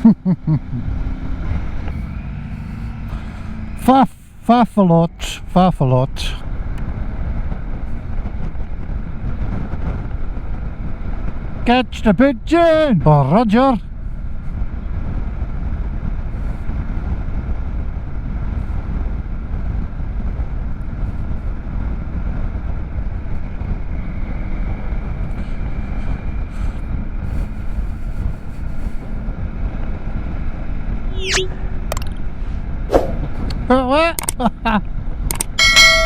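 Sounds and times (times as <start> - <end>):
motorcycle engine hum: 0.0 - 5.6, 6.3 - 11.7, 13.8 - 36.0
wind rushing over microphone: 6.4 - 11.7, 13.8 - 33.8
falling whistle: 31.1 - 31.8.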